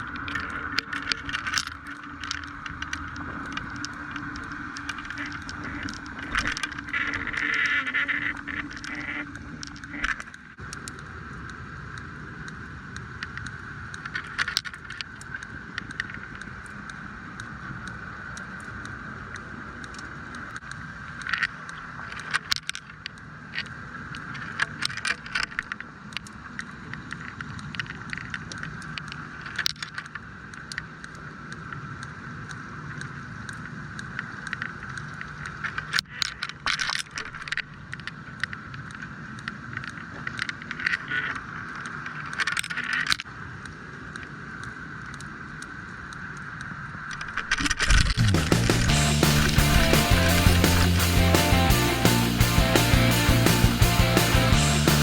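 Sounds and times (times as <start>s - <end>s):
sharp clicks and scrapes: 0.0s - 17.6s, 19.3s - 49.6s.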